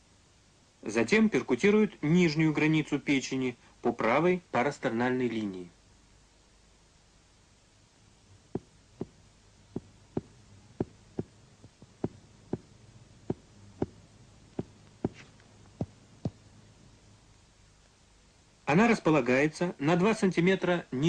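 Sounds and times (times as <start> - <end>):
finger taps on abdomen: 8.6 - 9.2, 9.8 - 12.7.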